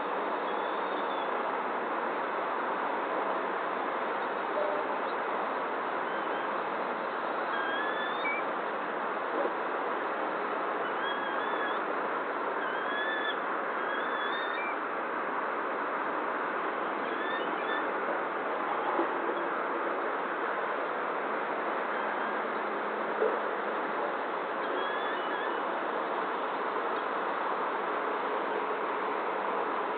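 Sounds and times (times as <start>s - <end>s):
rushing background noise: 0.0s - 29.9s
bird whistled calls: 7.5s - 8.4s, 10.9s - 11.8s, 12.6s - 14.8s, 17.0s - 17.8s, 24.7s - 25.6s.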